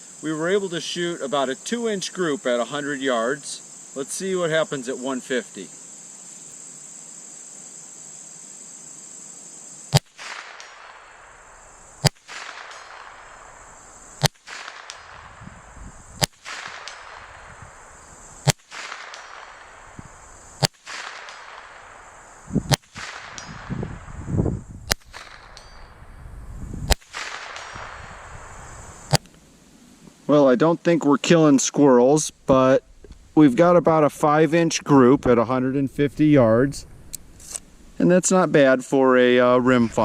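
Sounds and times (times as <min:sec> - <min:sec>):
crickets chirping: 0:00.0 - 0:40.0
rifle shots with echo: 0:09.9 - 0:24.0, 0:24.9 - 0:26.0, 0:26.9 - 0:29.2.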